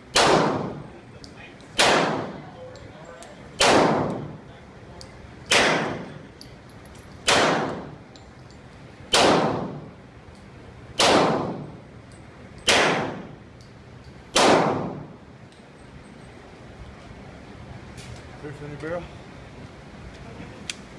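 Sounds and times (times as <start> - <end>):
pistol shots: 0.1 - 0.8, 1.8 - 2.4, 3.6 - 4.4, 5.5 - 6.2, 7.2 - 8.0, 9.1 - 9.9, 11.0 - 11.8, 12.7 - 13.4, 14.3 - 15.1.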